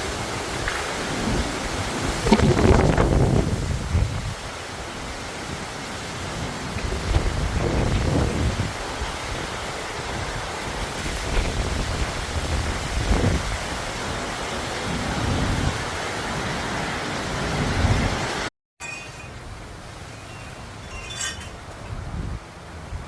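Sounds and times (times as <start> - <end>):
heavy rain pouring: 0.0 - 18.5.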